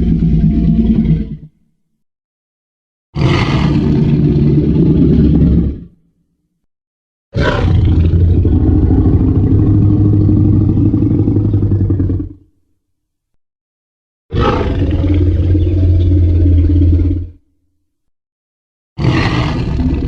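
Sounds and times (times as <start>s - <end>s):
dinosaur roar with shriek: 3.2s - 5.9s, 7.4s - 12.4s, 14.3s - 17.4s, 19.0s - 20.0s.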